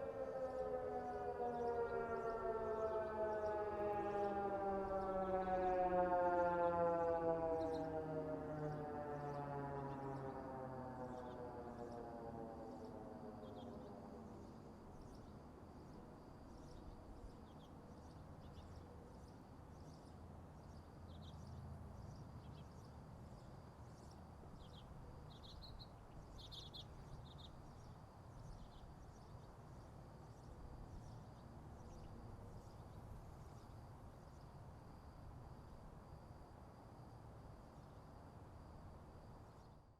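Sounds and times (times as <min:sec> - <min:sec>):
siren winding down: 0:00.0 - 0:13.0
bird chirps: 0:24.0 - 0:29.3.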